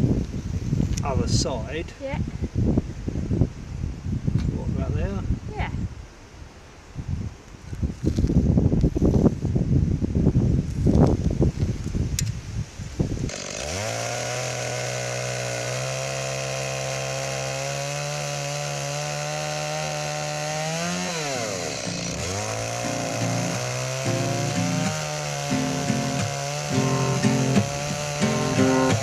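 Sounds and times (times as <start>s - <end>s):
chainsaw cutting a log: 13.3s - 29.0s.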